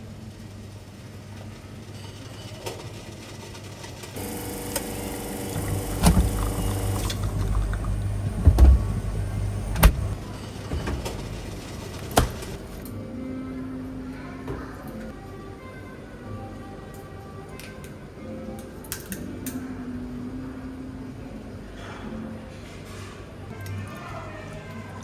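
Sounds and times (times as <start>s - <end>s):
kitchen appliance motor humming: 4.2s - 12.8s
low rumbling thumps: 5.2s - 10.2s.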